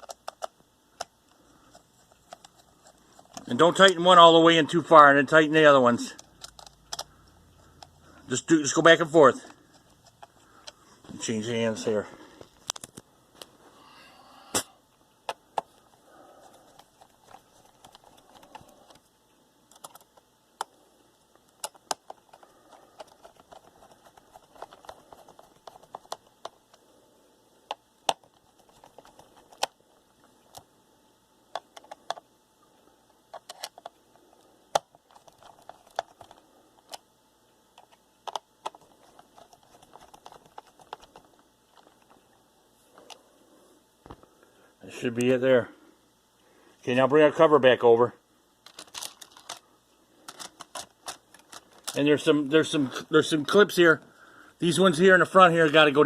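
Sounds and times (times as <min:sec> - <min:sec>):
faint rubbing and handling: 0:15.7 - 0:19.1, 0:22.1 - 0:27.2, 0:38.6 - 0:44.3.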